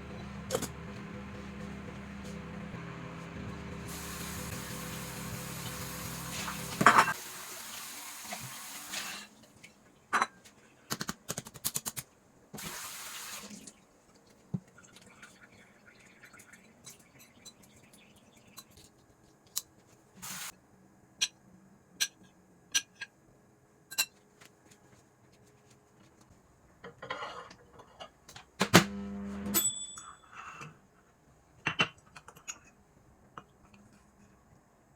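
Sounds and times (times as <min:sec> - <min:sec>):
tap running into sink: 0:03.9 - 0:07.2.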